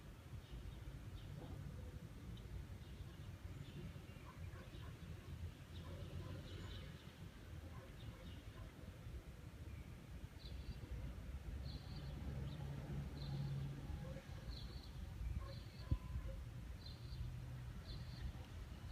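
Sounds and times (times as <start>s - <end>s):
bird chirping: 11.6s - 18.9s.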